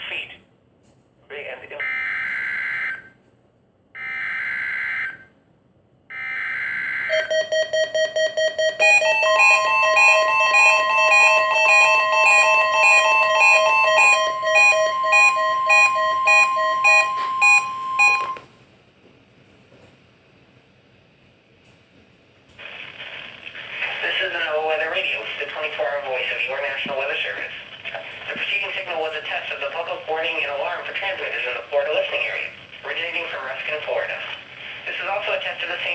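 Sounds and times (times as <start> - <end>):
rapid electronic beeping: 7.1 - 18.4.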